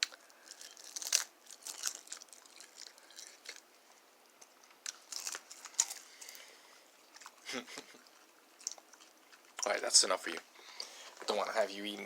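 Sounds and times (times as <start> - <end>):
dog crunching a crispy snack: 0.0 - 3.7, 4.7 - 6.5.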